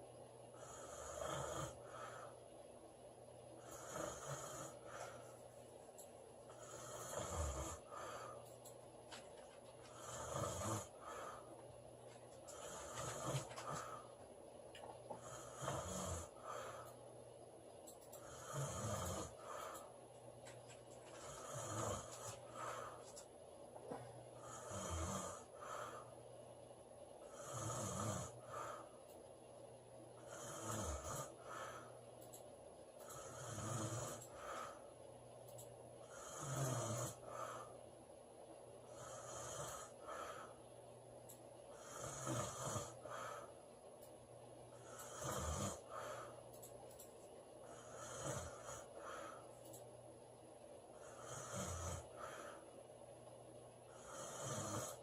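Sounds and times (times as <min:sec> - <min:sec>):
woman snoring: 0:00.6 - 0:02.3, 0:03.6 - 0:05.2, 0:06.5 - 0:08.4, 0:09.8 - 0:11.4, 0:12.5 - 0:14.0, 0:15.2 - 0:16.9, 0:18.2 - 0:19.8, 0:21.1 - 0:22.9, 0:24.4 - 0:26.1, 0:27.2 - 0:28.8, 0:30.2 - 0:31.8, 0:33.0 - 0:34.8, 0:36.0 - 0:37.7, 0:38.9 - 0:40.6, 0:41.7 - 0:43.5, 0:44.7 - 0:46.3, 0:47.6 - 0:49.4, 0:51.0 - 0:52.6, 0:53.9 - 0:55.0.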